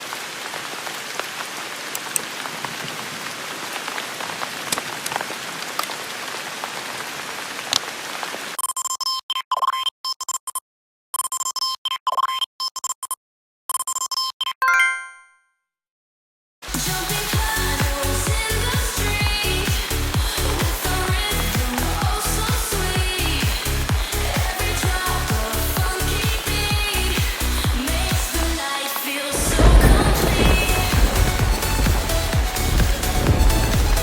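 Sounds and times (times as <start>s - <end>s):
steady rain falling: 0.0s - 8.6s, 16.6s - 34.0s
high beeping tones: 13.9s - 15.4s.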